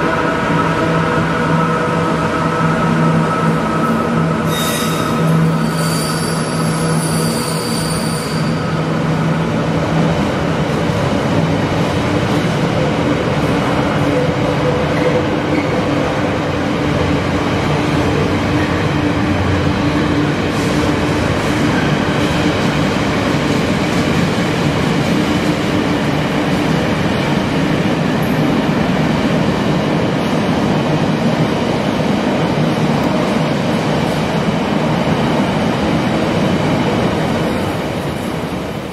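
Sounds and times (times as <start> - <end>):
train wheels rumbling on track: 0.0 - 38.9
high wheel squeal: 4.5 - 8.9.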